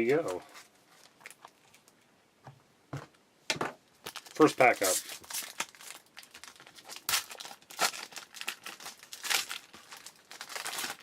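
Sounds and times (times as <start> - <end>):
card pack wrapper tearing: 4.1 - 11.0.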